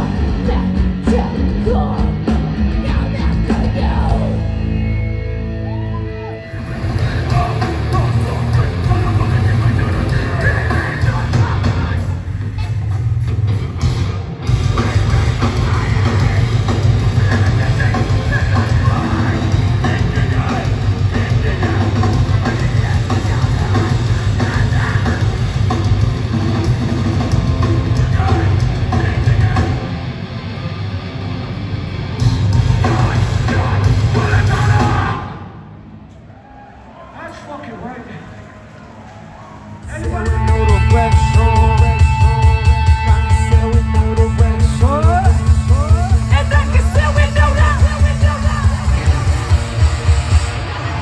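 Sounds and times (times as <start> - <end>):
distorted guitars: 0.0 - 36.2, 39.1 - 51.0
pounding drums: 6.6 - 30.1, 32.2 - 35.3.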